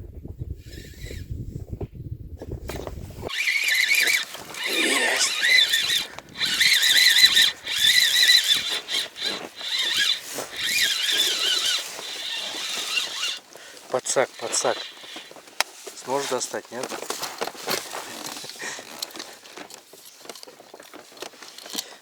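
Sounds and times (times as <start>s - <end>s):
fishing reel whining: 0.6s - 1.2s, 3.2s - 15.4s.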